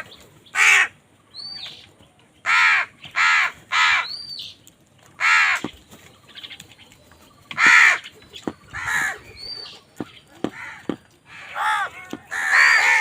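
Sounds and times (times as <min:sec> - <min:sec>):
crows cawing: 0:00.0 - 0:01.0, 0:02.4 - 0:04.2, 0:05.2 - 0:05.8, 0:07.5 - 0:09.4, 0:10.4 - 0:13.0.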